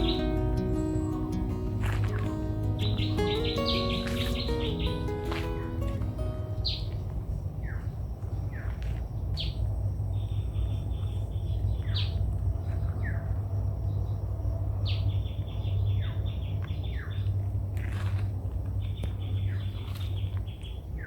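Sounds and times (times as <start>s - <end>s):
birds whistling calls: 0.0s - 5.9s, 6.5s - 7.0s, 7.6s - 13.3s
low rumble: 5.8s - 21.0s.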